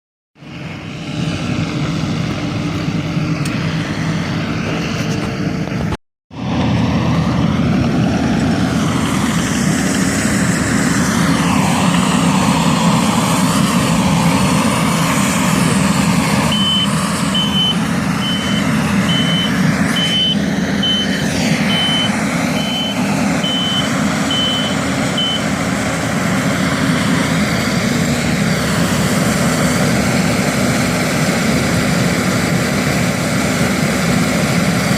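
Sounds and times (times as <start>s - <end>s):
skid steer engine running: 0.4s - 34.9s
stump grinder grinding: 6.6s - 34.8s
backup alarm beeping: 16.5s - 25.5s.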